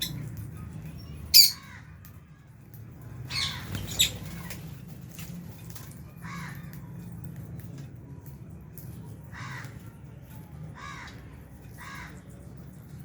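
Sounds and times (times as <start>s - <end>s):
lovebirds shrieking: 1.3s - 1.9s, 3.3s - 4.6s.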